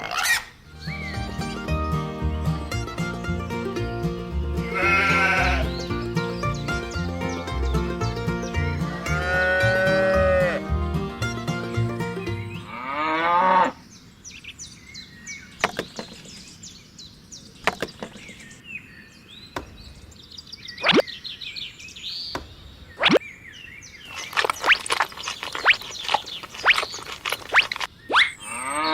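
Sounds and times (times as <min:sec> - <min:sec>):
upbeat background music: 0:00.8 - 0:12.6
cow mooing: 0:04.6 - 0:05.8, 0:09.0 - 0:10.8, 0:12.6 - 0:13.8, 0:28.4 - 0:28.9
faint bird chirps: 0:13.8 - 0:28.9.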